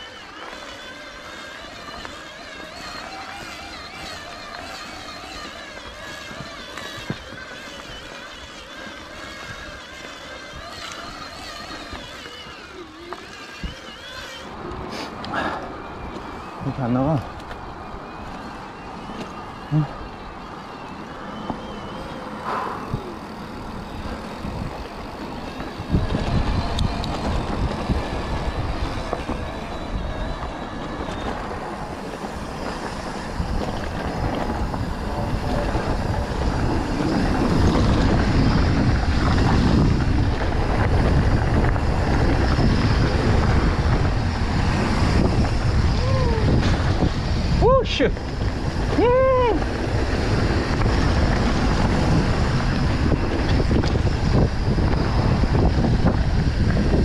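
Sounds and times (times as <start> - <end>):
bike rattling on dirt trail: 0.0 - 57.0
wind buffeting microphone: 0.0 - 57.0.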